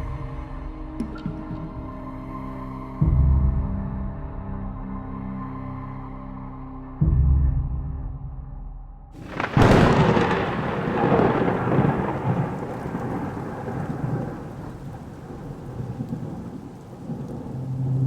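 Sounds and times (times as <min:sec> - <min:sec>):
rain falling: 0:09.2 - 0:18.0
thunderclap and rumble: 0:09.2 - 0:18.0.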